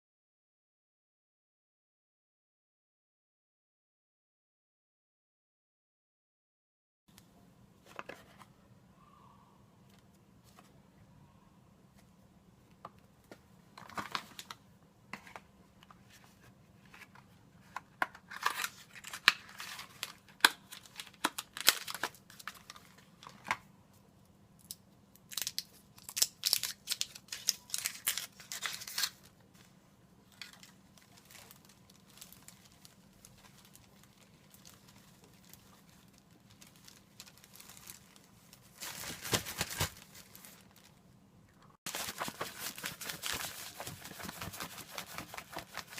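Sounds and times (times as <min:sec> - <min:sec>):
onion skin crinkling and tearing: 0:24.6 - 0:29.2, 0:30.3 - 0:40.9.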